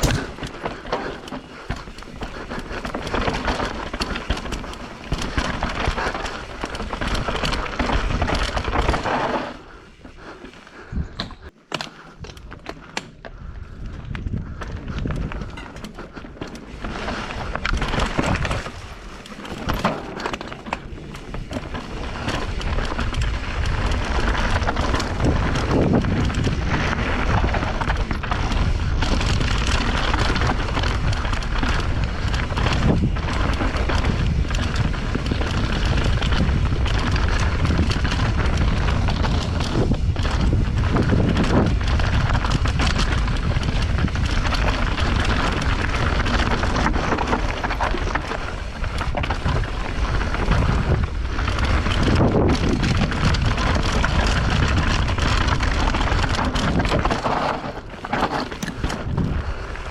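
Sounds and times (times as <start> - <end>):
bike knocks and rattles: 0.0 - 9.7, 10.4 - 59.9
bike tyres rolling on dirt: 0.0 - 59.9
wind buffeting microphone: 13.4 - 59.9.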